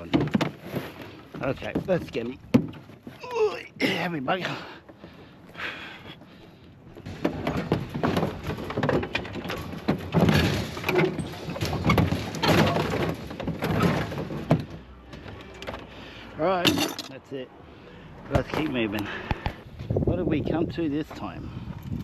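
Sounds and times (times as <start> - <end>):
scrap metal clattering: 7.0 - 17.2.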